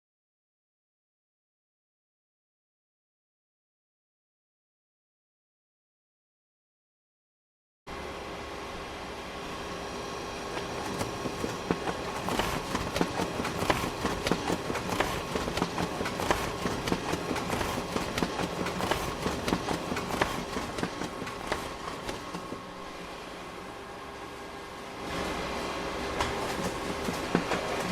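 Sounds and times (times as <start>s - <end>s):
photocopier motor hum: 7.9s - 27.9s
photocopier mechanical clicking: 10.5s - 22.7s, 26.2s - 27.9s.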